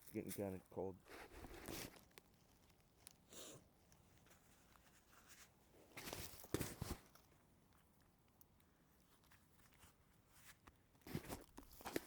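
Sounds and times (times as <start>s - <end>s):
rustling and scuffing: 4.2s - 7.2s.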